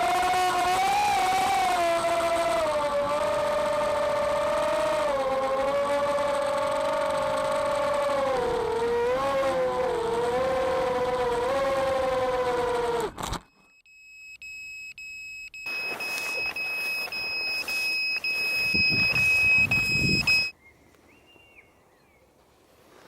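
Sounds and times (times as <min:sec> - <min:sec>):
drone motors whining: 0:00.0 - 0:13.7, 0:15.7 - 0:20.5
high electronic beep: 0:13.5 - 0:20.5.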